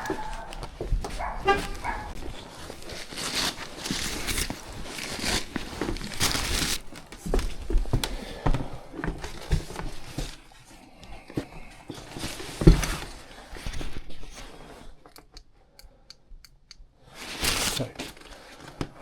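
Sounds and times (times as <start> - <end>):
tools and bags knocking and rustling: 0.0 - 10.6, 11.2 - 14.2
footsteps: 0.0 - 14.5.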